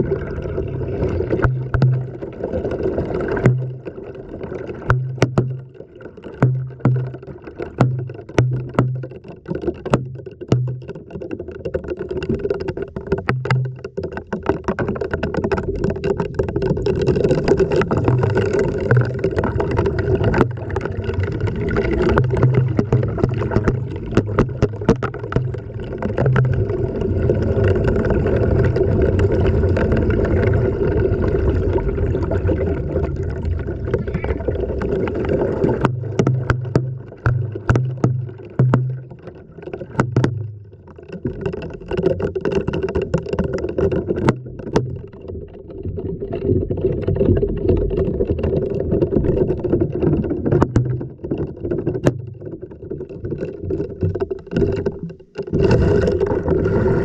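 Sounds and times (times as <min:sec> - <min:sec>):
water sloshing and churning: 0:00.0 - 0:57.0
objects knocking against drum: 0:01.4 - 0:02.3, 0:03.4 - 0:03.9, 0:04.9 - 0:20.9, 0:21.6 - 0:26.7, 0:35.7 - 0:45.2, 0:50.0 - 0:52.5.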